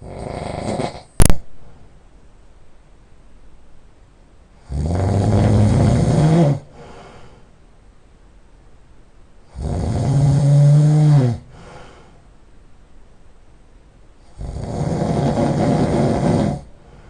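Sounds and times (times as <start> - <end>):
person snoring heavily: 0.0 - 1.2, 4.6 - 7.3, 9.5 - 12.1, 14.2 - 17.0
soft breath: 6.6 - 7.6, 11.4 - 12.4, 15.7 - 17.0.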